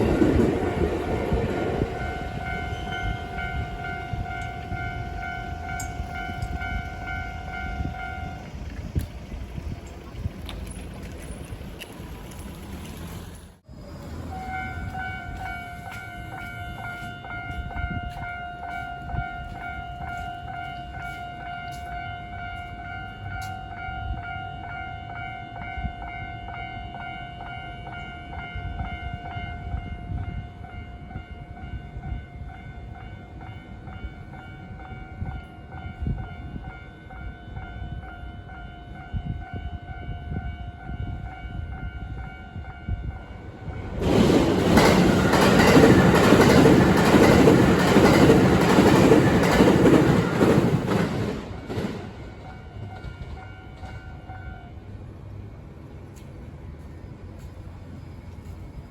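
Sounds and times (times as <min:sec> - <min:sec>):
electric train passing: 0:00.0 - 0:58.9.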